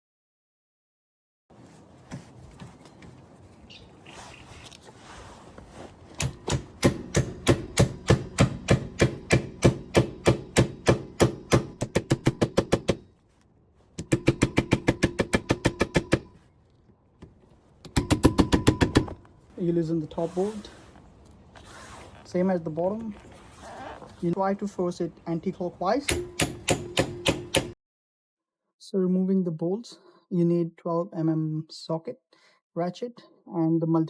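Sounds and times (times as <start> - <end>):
handling noise: 1.5 - 8.6, 11.8 - 24.4
hammer striking metal socket: 17.9 - 19.2, 26.1 - 27.8.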